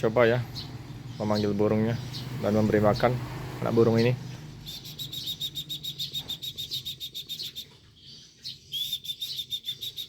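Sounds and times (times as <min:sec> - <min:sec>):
short high bird-like chirps: 0:04.6 - 0:10.0.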